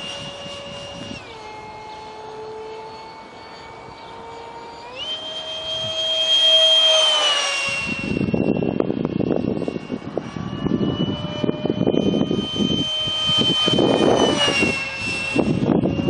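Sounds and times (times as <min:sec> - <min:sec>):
electric ducted fan whining: 0:00.0 - 0:16.0
low rumbling noise: 0:00.0 - 0:16.0.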